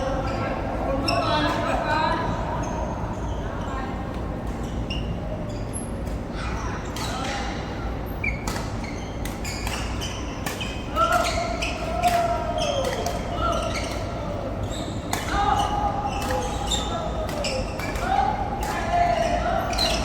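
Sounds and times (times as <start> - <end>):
players' voices: 10.8 - 20.0.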